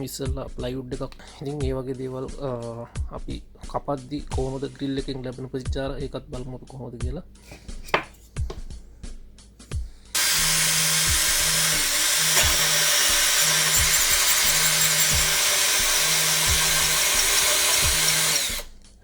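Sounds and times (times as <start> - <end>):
cordless drill cutting with hole saw: 10.2 - 18.8.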